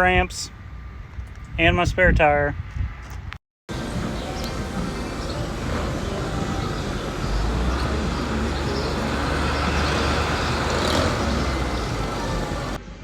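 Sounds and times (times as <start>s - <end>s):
vehicle engine low rumble: 3.7s - 13.0s.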